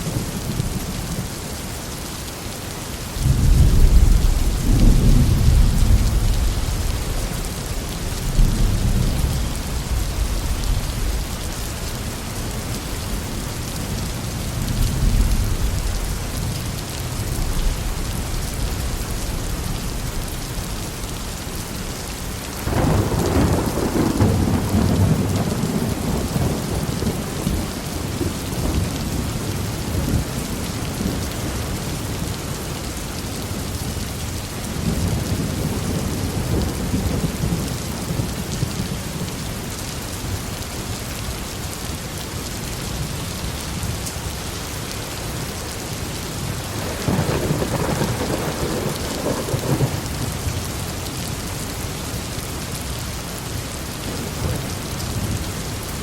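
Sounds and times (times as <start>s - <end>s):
heavy rain falling: 0.0s - 56.0s
rolling thunder: 3.2s - 11.4s, 22.6s - 30.4s, 46.6s - 50.5s.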